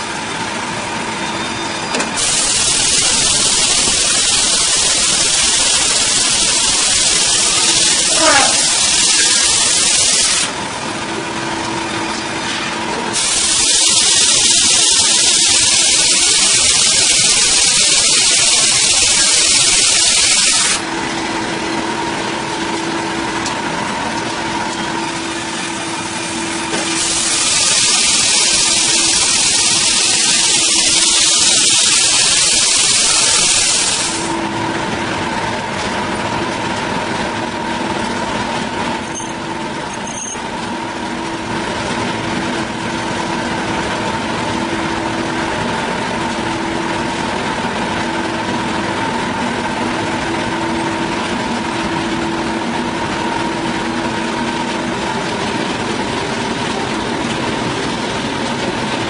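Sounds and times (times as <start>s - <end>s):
power saw cutting wood: 2.2s - 10.6s, 12.4s - 20.9s, 25.3s - 34.3s.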